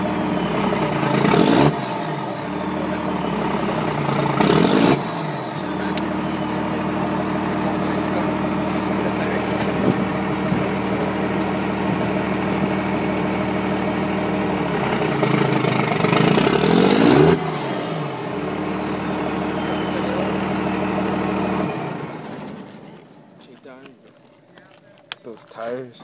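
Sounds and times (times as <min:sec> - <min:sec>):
turbo whistle: 0:00.0 - 0:09.2, 0:16.1 - 0:22.6
diesel engine idling and revving: 0:00.0 - 0:26.0.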